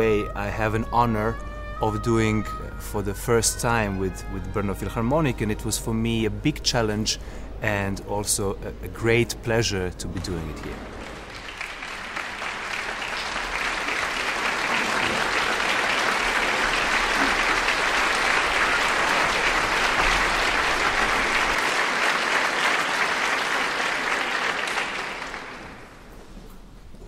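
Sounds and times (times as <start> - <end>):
audience applauding: 10.6 - 26.1.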